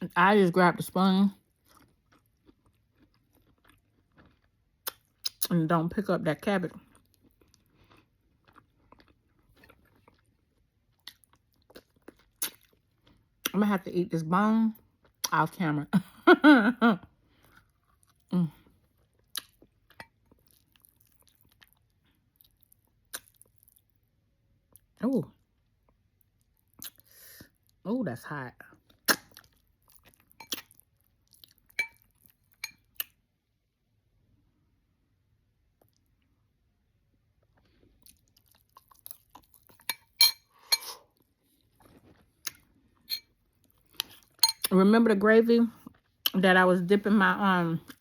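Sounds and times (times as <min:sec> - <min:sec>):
faint eating sounds: 0:00.1 - 0:15.6, 0:17.0 - 0:33.3, 0:35.6 - 0:44.8, 0:45.7 - 0:48.0
wet chewing and lip smacks: 0:01.5 - 0:05.5, 0:06.8 - 0:13.6, 0:18.8 - 0:24.0, 0:25.8 - 0:27.8, 0:28.8 - 0:33.2, 0:37.3 - 0:40.1, 0:41.2 - 0:42.8
spoon clinking against bowl: 0:31.8 - 0:32.0, 0:39.8 - 0:40.9, 0:44.4 - 0:44.7.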